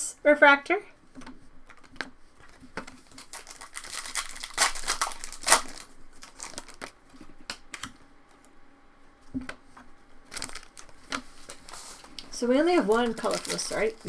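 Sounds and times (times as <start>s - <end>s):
foil wrapper crinkling: 1.7s - 7.0s, 10.2s - 14.0s.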